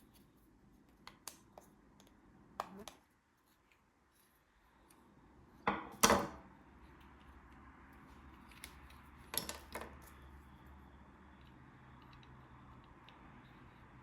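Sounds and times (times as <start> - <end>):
faint low hum: 0.0 - 14.0
light clicks of small parts: 11.3 - 13.9.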